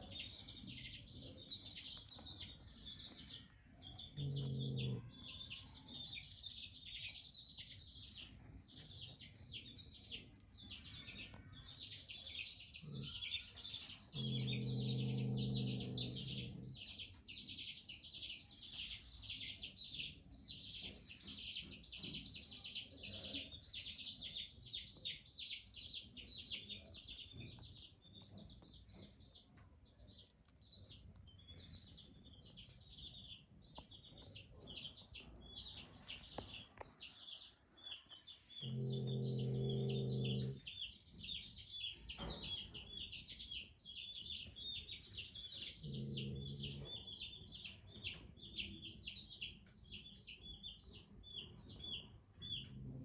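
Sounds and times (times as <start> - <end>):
low drawn-out animal calls: 4.0 - 5.2, 12.8 - 17.1, 37.9 - 40.8, 45.6 - 47.3.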